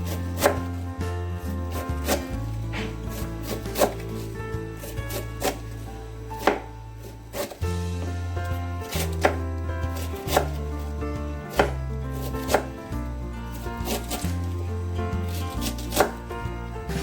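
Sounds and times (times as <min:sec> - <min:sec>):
knife chopping on cutting board: 0:00.0 - 0:00.7, 0:01.7 - 0:04.2, 0:04.8 - 0:05.8, 0:06.4 - 0:10.7, 0:11.5 - 0:12.7, 0:13.8 - 0:14.3, 0:15.3 - 0:16.2
background music with bass: 0:00.0 - 0:17.0.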